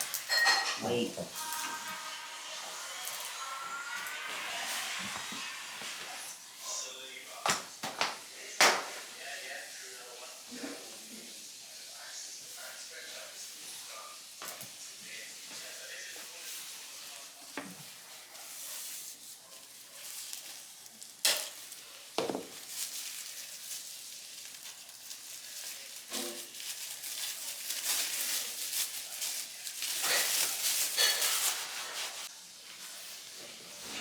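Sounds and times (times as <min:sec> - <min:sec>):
crackling rustling noise: 0:11.9 - 0:34.0.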